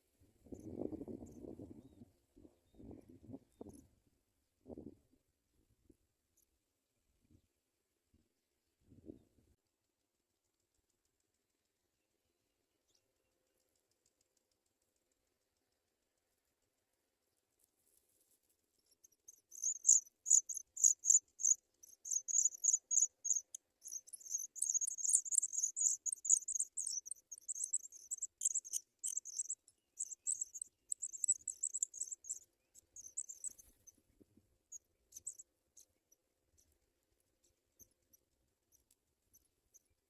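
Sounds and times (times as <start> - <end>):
nestling birds cheeping: 19.0 - 34.0, 34.7 - 36.1.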